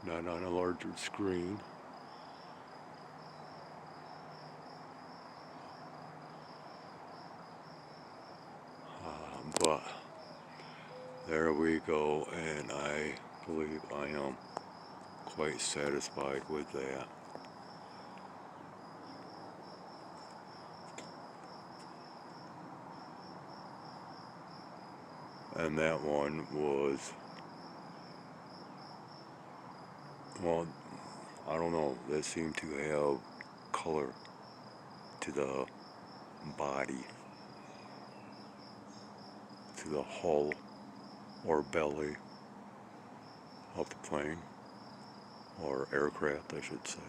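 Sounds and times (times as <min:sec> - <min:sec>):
crickets chirping: 0:00.0 - 0:47.0
faint low hum: 0:00.0 - 0:47.0
insects trilling: 0:00.0 - 0:47.0.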